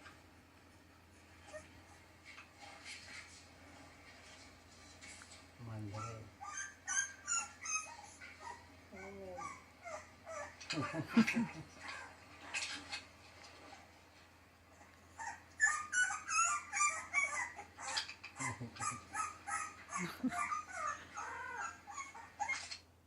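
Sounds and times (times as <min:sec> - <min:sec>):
puppy whimpering and yipping: 0:01.4 - 0:01.7, 0:05.9 - 0:10.6, 0:15.2 - 0:22.8.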